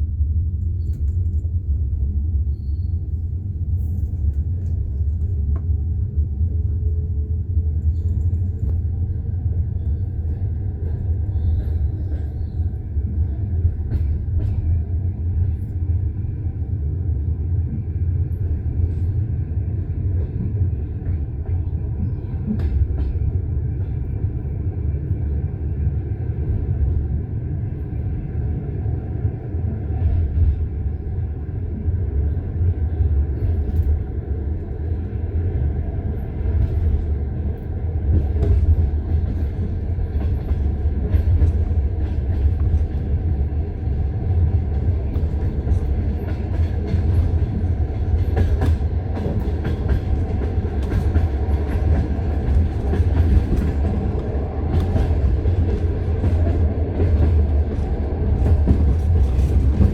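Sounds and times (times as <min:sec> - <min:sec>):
low train rumble: 0:00.0 - 0:59.9.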